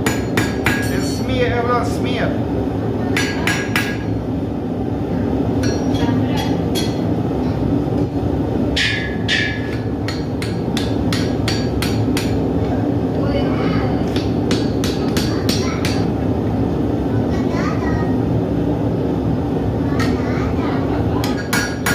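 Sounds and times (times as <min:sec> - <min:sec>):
hammer striking steel on anvil: 0:00.0 - 0:00.9, 0:03.2 - 0:04.1, 0:05.6 - 0:07.0, 0:08.8 - 0:12.5, 0:14.2 - 0:16.1, 0:21.2 - 0:21.9.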